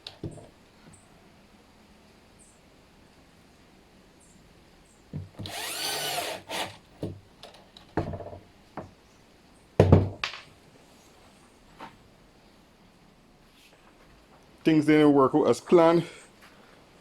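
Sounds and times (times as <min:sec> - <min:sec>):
power drill driving a screw: 0:05.4 - 0:06.8.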